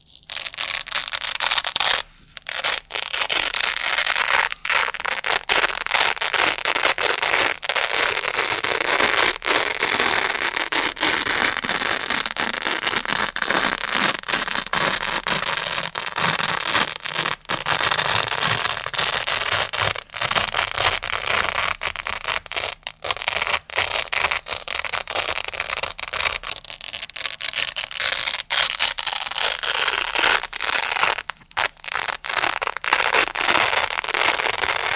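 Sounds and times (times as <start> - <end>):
velcro scratching: 0.0 - 34.9.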